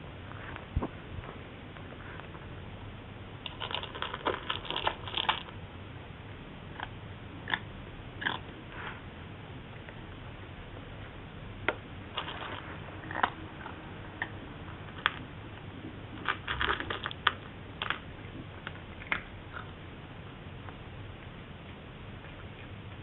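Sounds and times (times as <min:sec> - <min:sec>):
cat crunching dry kibble: 0:03.4 - 0:05.6, 0:11.7 - 0:19.8.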